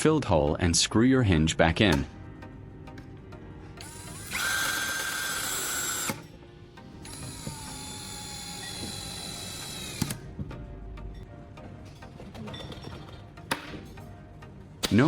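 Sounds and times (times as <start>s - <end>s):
electric drill whining: 3.8s - 6.4s, 7.0s - 10.3s.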